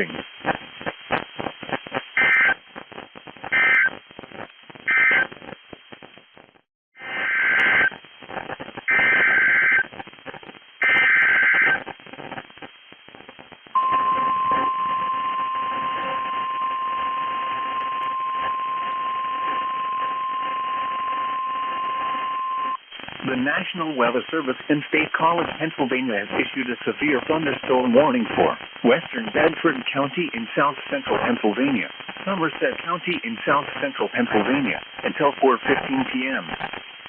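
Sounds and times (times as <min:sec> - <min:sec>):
radio static crackling: 0:00.0 - 0:37.0
data bursts: 0:13.8 - 0:22.8
steady warning alarm tone: 0:13.8 - 0:22.8.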